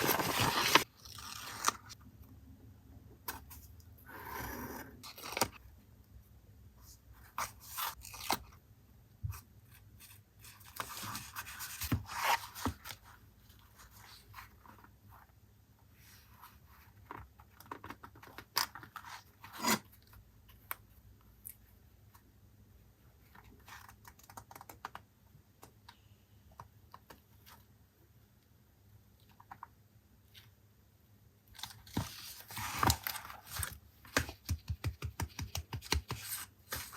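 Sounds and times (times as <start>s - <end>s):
paper tearing and rustling: 0.0s - 2.0s.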